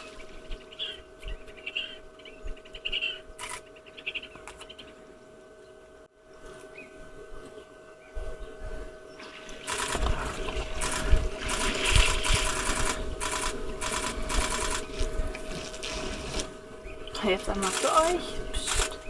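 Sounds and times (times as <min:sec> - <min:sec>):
camera shutters firing: 0:09.6 - 0:14.9.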